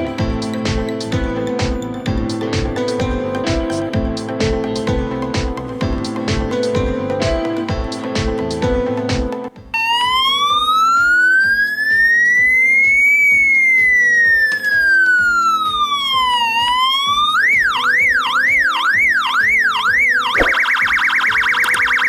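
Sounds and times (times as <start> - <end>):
background music with beat: 0.0 - 22.0
electronic siren wailing: 9.7 - 22.0.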